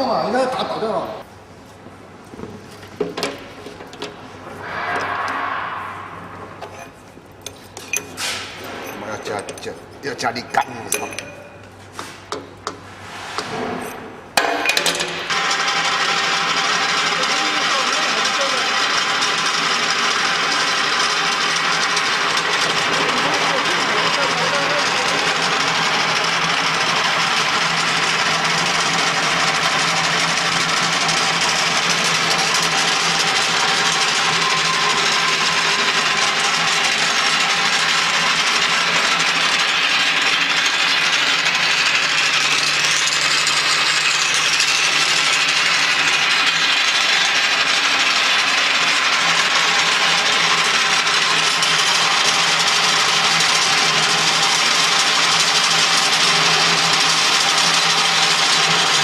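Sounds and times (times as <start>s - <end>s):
high whine: 4.2s - 7.5s
grinding machine running: 14.4s - 59.0s.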